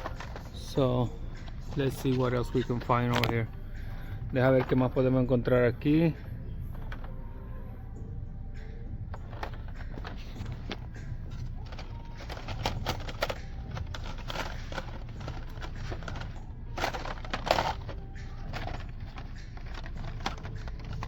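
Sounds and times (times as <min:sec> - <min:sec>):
toy packaging clicking and crinkling: 0:00.0 - 0:03.4, 0:09.2 - 0:21.0
toy cars clattering: 0:00.0 - 0:03.5, 0:09.2 - 0:21.0
steady low hum: 0:00.0 - 0:21.0.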